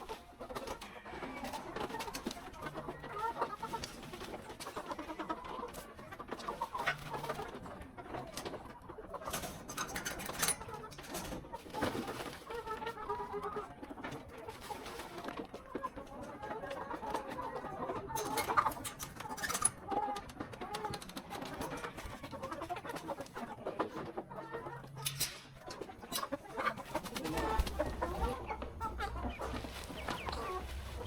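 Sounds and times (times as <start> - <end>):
chickens clucking: 0.0 - 31.0
birds calling: 26.8 - 31.0.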